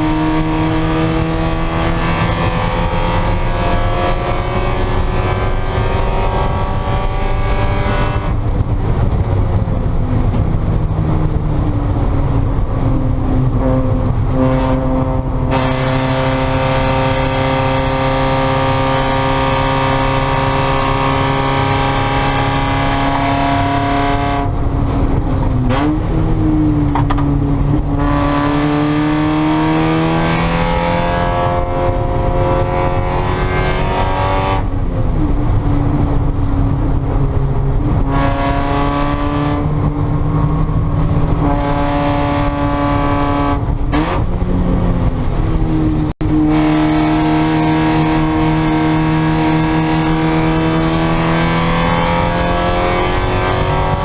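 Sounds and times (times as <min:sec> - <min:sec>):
racing car engine revving: 0:00.0 - 0:54.0.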